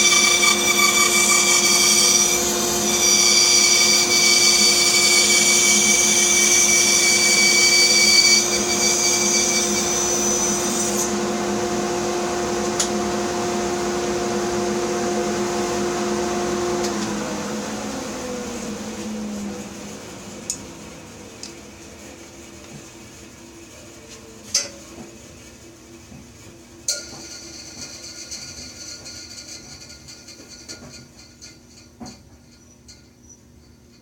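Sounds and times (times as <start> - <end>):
bandsaw cutting wood: 0.0 - 11.2
bandsaw motor winding down: 0.0 - 19.5.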